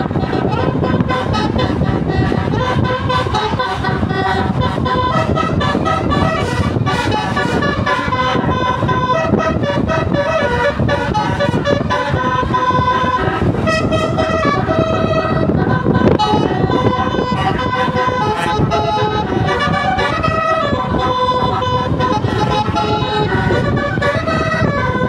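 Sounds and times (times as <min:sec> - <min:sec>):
multi-tone bus horn tune: 0:00.0 - 0:25.0.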